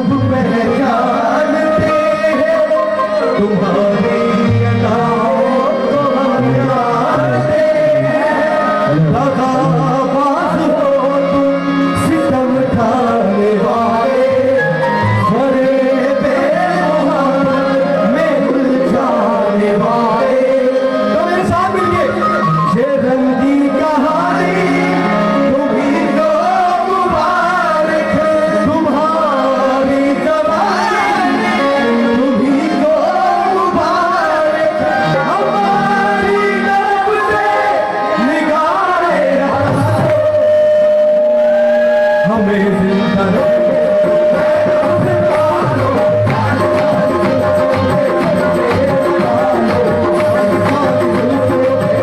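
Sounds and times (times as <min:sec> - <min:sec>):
held instrumental notes: 0:00.0 - 0:52.0
person singing ornamented melody: 0:00.0 - 0:52.0
hand drums beating: 0:44.6 - 0:52.0.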